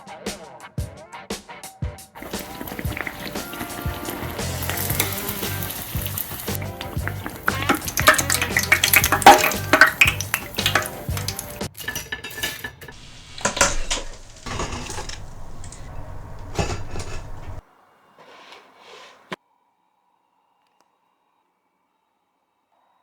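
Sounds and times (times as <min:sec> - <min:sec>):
dishes and metal utensils clattering: 0:02.2 - 0:17.6.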